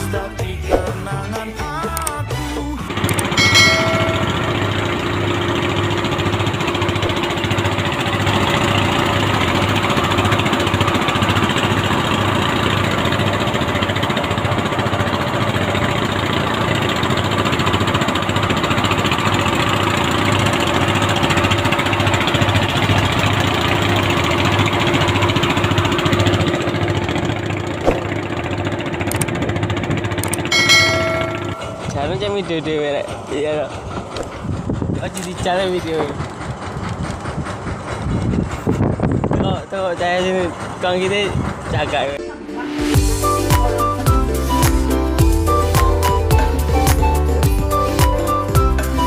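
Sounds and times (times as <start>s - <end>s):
engine idling: 0.0s - 49.0s
short knock: 0.7s - 1.0s.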